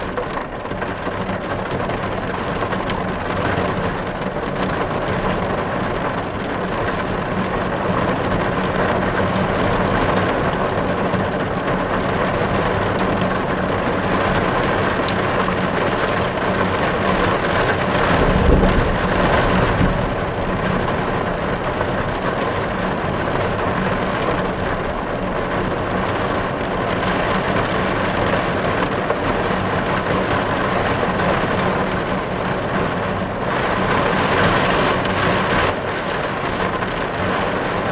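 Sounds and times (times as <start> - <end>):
heavy rain: 0.0 - 37.9
low thunder rumble: 16.3 - 26.9.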